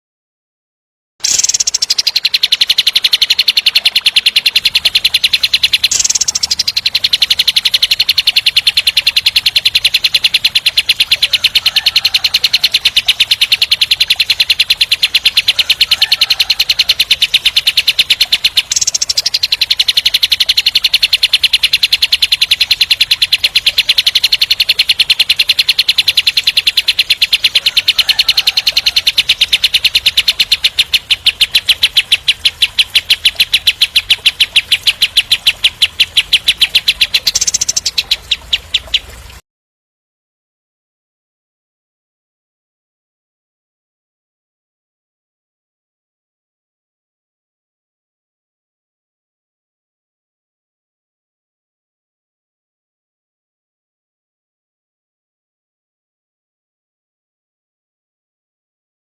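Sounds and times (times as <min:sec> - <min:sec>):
bulbul rattling trill: 0:01.2 - 0:39.4.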